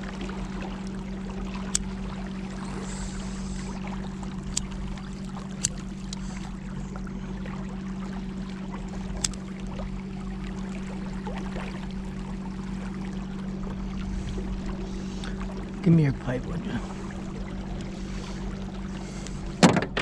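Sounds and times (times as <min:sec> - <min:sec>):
low engine hum: 0:00.0 - 0:20.0
water rushing and splashing: 0:00.0 - 0:20.0
sharp knocks: 0:19.6 - 0:20.0.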